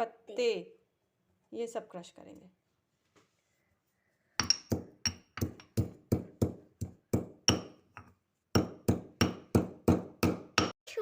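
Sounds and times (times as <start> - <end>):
pestle pounding in a mortar: 4.4 - 10.8.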